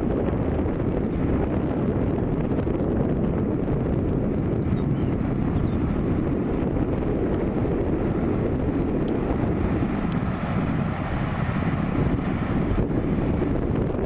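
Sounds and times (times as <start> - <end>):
wind buffeting microphone: 0.0 - 14.0
train rumbling past: 7.5 - 14.0.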